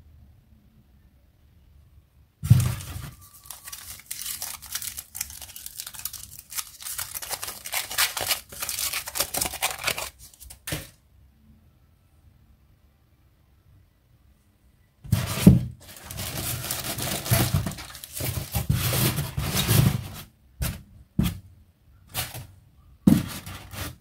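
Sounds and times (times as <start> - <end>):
packaging being torn open: 2.7 - 10.7, 15.9 - 18.5
thump: 15.1 - 15.8, 23.1 - 23.4.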